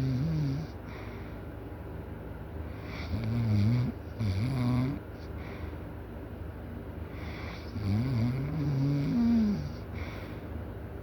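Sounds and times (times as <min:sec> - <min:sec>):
person snoring loudly: 0:07.7 - 0:09.8.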